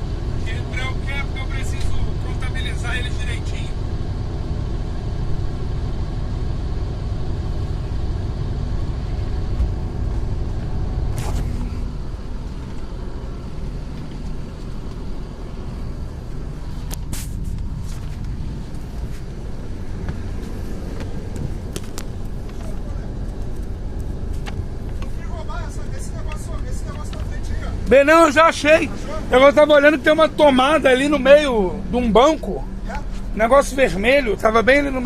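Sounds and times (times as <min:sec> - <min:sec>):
bus engine running: 0:00.0 - 0:35.0
brief hisses: 0:17.1 - 0:17.6.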